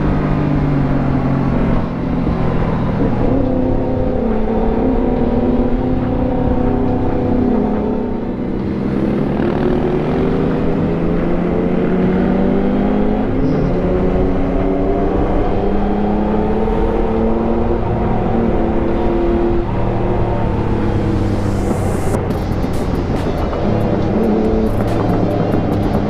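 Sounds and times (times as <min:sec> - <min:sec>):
motorcycle engine running: 0:19.6 - 0:26.0.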